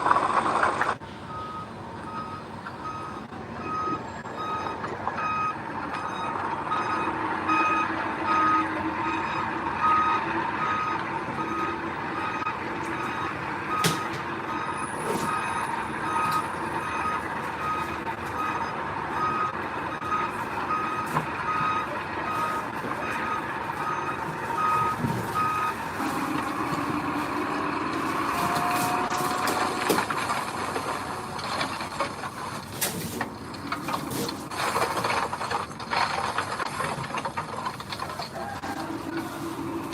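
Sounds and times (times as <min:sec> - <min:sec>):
diesel engine running: 0:00.0 - 0:39.9
reversing alarm beeps: 0:01.3 - 0:25.8.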